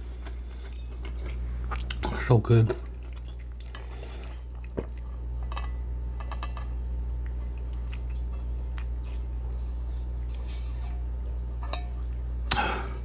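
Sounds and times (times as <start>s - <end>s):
chewing food: 0.0s - 9.6s
low electrical hum: 0.0s - 13.0s.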